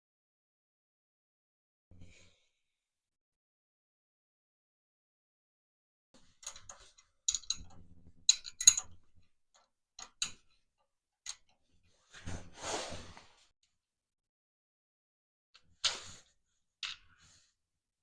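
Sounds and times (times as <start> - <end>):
metal tools clinking: 6.4 - 9.0.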